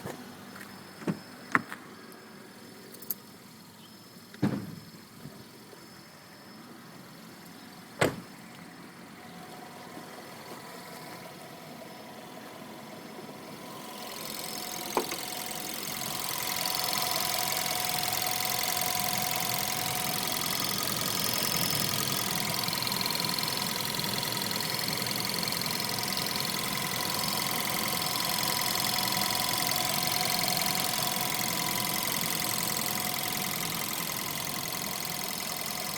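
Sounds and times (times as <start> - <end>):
car engine running: 8.9 - 35.9.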